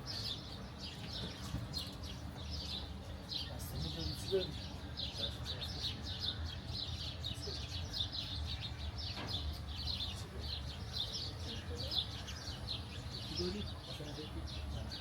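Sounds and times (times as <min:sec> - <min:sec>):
birds chirping: 0:00.0 - 0:15.0.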